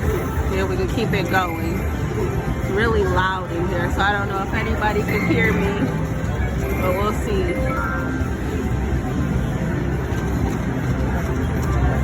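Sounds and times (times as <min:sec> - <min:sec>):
slot machine music: 0:00.0 - 0:12.0.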